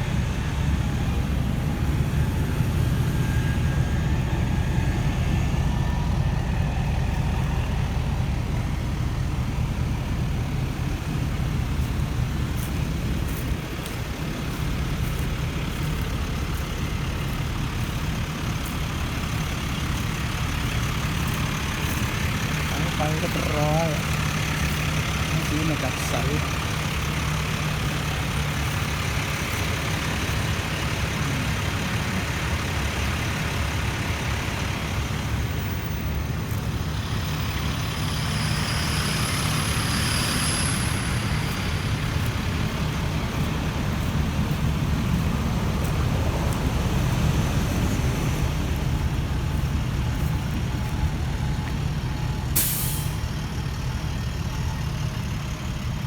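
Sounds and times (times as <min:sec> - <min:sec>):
truck engine running: 0:00.0 - 0:56.0
air hiss: 0:52.6 - 0:53.2.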